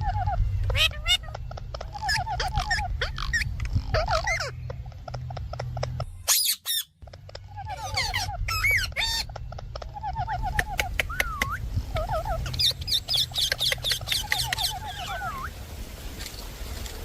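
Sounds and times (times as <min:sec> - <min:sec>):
parakeet squawking and chattering: 0:00.0 - 0:15.6
parakeet shrill screech: 0:06.2 - 0:06.9, 0:07.7 - 0:09.3.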